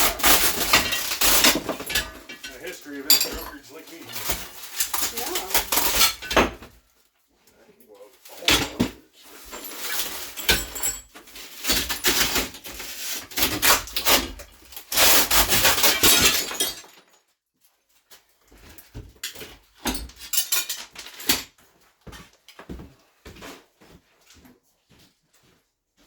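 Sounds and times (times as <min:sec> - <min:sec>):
broken glass debris clattering: 0:00.0 - 0:06.6, 0:09.4 - 0:12.7, 0:15.3 - 0:17.2, 0:19.8 - 0:21.4.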